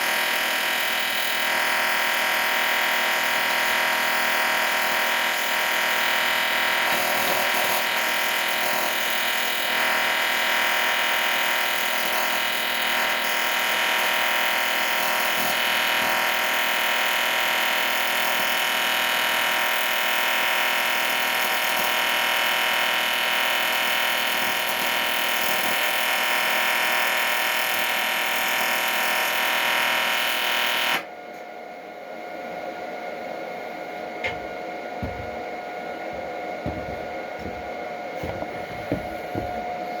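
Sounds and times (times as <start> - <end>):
power tool motor whining: 0.0 - 31.1
steady hum: 31.1 - 40.0.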